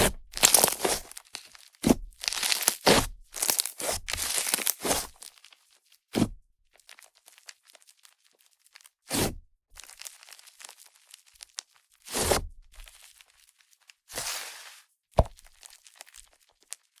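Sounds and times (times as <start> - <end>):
slime squished by hand: 0.0 - 5.6.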